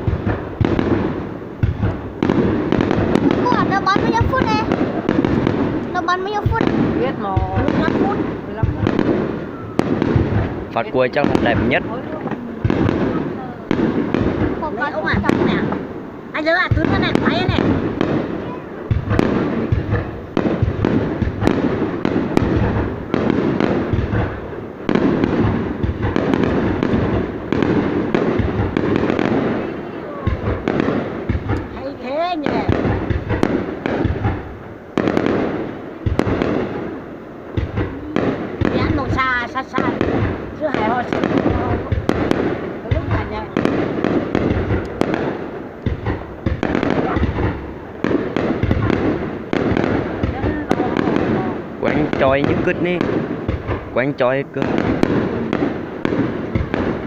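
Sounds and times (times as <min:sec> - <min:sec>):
fireworks booming: 0:00.0 - 0:57.0
low rumble of bursts: 0:00.0 - 0:57.0.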